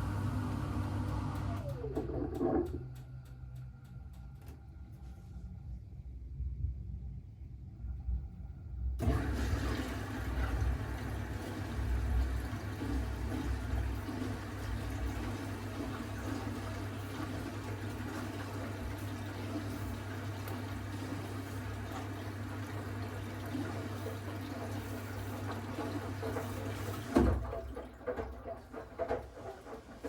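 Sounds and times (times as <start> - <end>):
water rushing into drum: 9.0 - 30.0.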